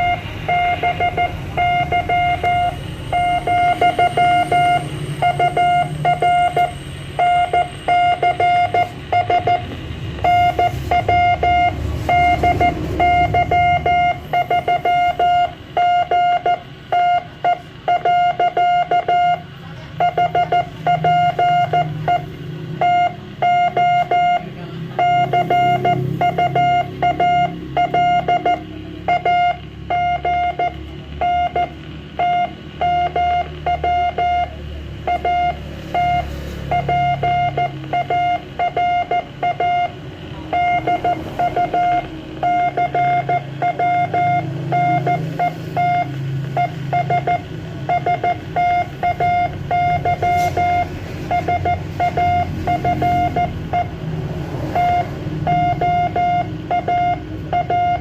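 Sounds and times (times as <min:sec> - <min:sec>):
morse code beeping tone: 0:00.0 - 0:58.0.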